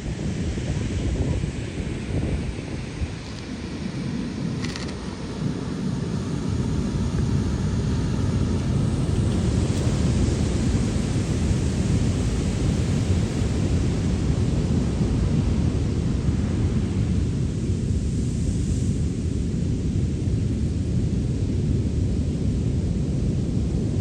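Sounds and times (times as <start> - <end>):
wind rumbling on microphone: 0.0 - 24.0
large waves breaking: 0.2 - 18.4.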